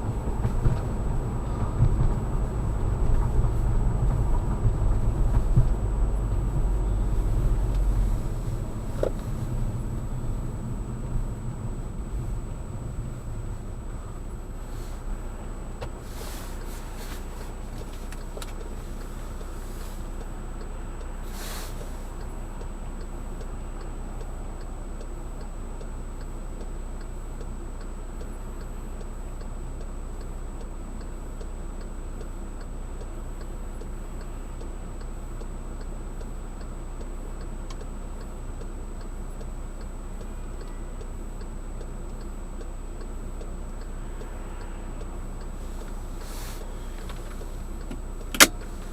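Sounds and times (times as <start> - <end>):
car engine and road hum: 0.0 - 48.9
turn signal relay ticking: 0.0 - 48.9
brief hissing: 16.0 - 17.3, 21.3 - 22.1, 46.2 - 47.6.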